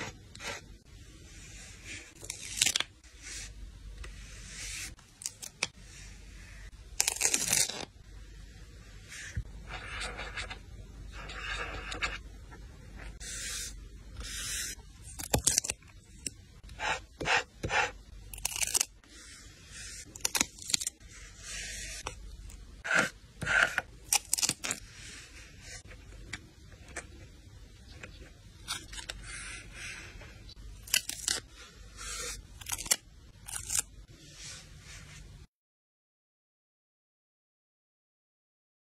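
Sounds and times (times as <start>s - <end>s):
paper tearing: 7.0s - 7.9s.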